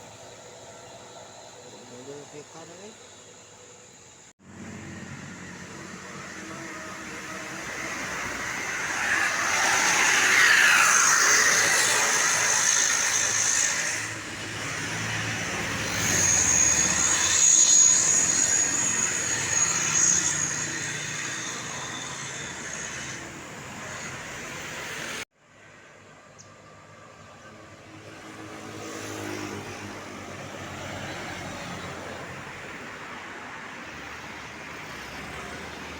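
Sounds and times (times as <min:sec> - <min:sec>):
high-pitched whine: 0:00.0 - 0:25.2
buses passing by: 0:00.0 - 0:35.9.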